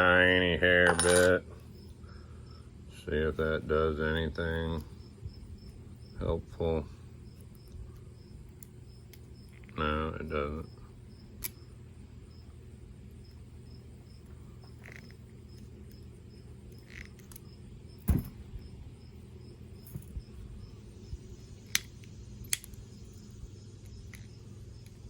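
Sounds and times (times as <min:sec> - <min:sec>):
steady low hum: 0:00.0 - 0:25.0
wire cutters clicking on wire: 0:21.7 - 0:22.8.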